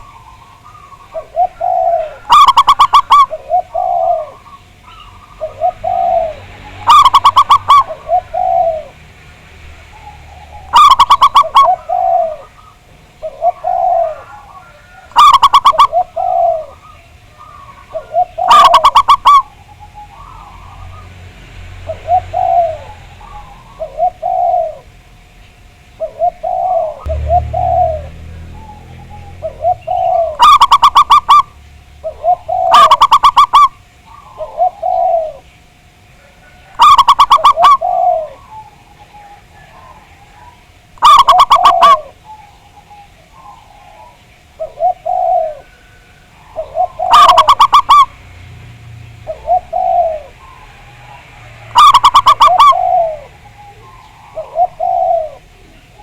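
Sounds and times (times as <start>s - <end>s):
doves cooing: 0.0s - 9.0s, 9.7s - 56.0s
rapid staccato bird notes: 27.1s - 31.5s.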